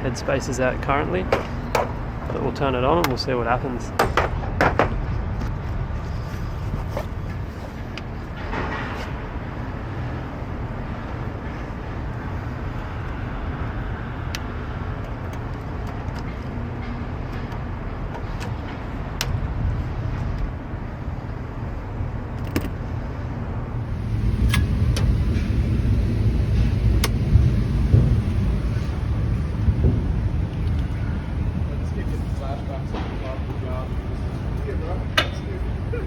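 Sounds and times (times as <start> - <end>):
air conditioner unit humming: 23.7 - 36.0.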